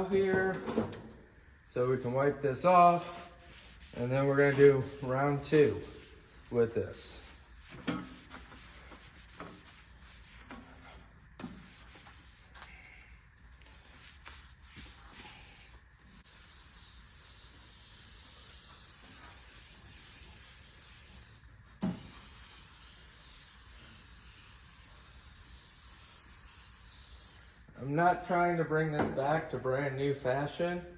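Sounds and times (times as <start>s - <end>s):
towel rubbing on table: 2.7s - 11.0s
aerosol spray hiss: 13.7s - 27.6s.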